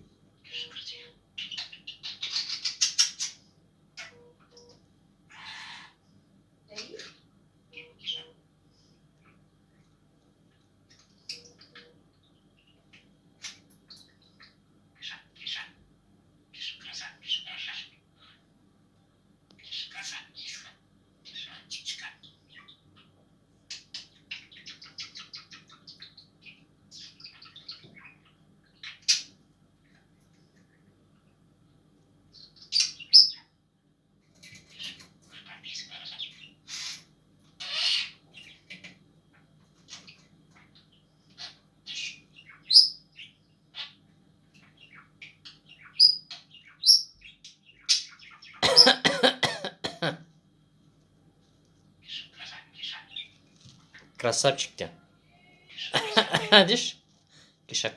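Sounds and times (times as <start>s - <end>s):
budgerigar chirping: 0.4s - 3.4s, 6.8s - 8.4s, 16.6s - 18.4s, 37.6s - 38.2s, 41.4s - 44.0s, 44.8s - 49.3s
rasping cough-like bird sounds: 48.6s - 50.3s, 55.8s - 57.0s.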